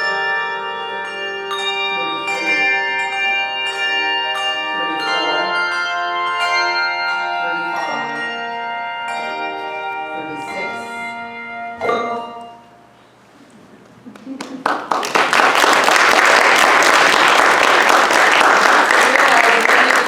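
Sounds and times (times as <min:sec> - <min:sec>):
handbell choir ringing chords: 0:00.0 - 0:12.9.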